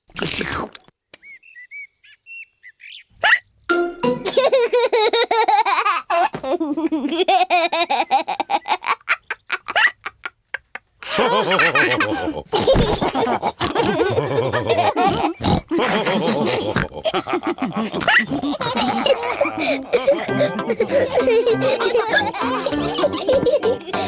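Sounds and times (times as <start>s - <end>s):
birds chirping: 1.1s - 3.7s, 14.1s - 16.7s
cartoon hiccup: 3.2s - 3.4s
cartoon pigs laughing and snorting: 4.2s - 24.0s.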